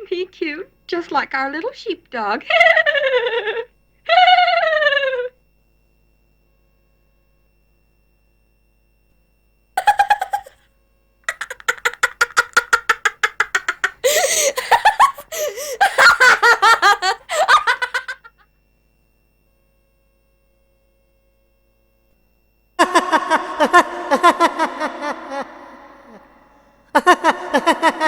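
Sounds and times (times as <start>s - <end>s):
child laughing: 2.5s - 5.3s, 9.8s - 10.6s, 11.3s - 18.4s, 22.8s - 28.0s
wavering cries: 2.5s - 5.4s, 9.8s - 10.6s, 11.3s - 18.4s, 22.8s - 28.0s
child squealing: 4.1s - 5.3s, 9.8s - 10.6s, 11.3s - 18.3s.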